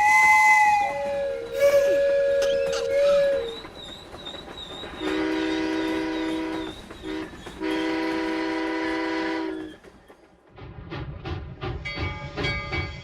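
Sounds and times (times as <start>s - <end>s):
train horn blasts: 5.0s - 9.7s.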